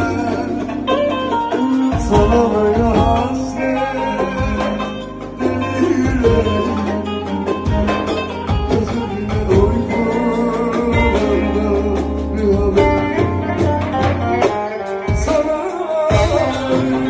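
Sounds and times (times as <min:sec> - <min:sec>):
wavering singing voice: 0:00.0 - 0:13.5
plucked string instruments: 0:00.0 - 0:17.0
sustained bass notes: 0:00.0 - 0:17.0.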